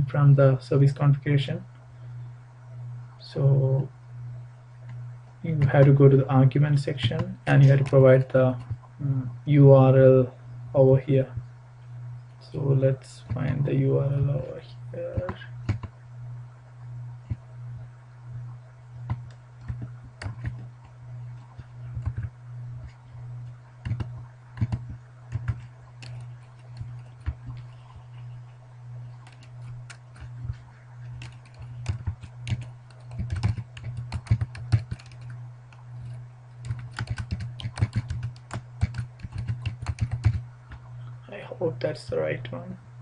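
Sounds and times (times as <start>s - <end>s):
low electrical hum: 0.0s - 43.0s
computer keyboard typing: 15.2s - 15.9s, 19.0s - 20.7s, 21.6s - 23.0s, 23.8s - 28.2s, 29.1s - 35.4s, 36.0s - 40.4s.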